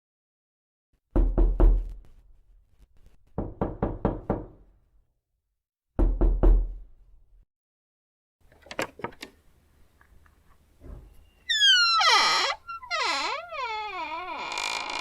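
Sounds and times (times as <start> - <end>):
knocking on a door: 1.1 - 2.0, 3.4 - 4.6, 6.0 - 6.8.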